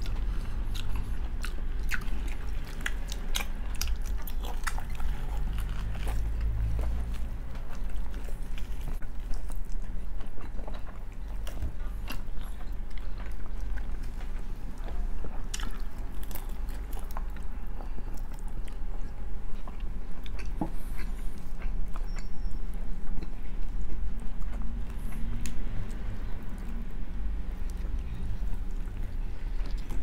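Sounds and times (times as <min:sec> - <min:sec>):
close biting and chewing: 0:00.0 - 0:26.8
steady low hum: 0:00.0 - 0:30.0.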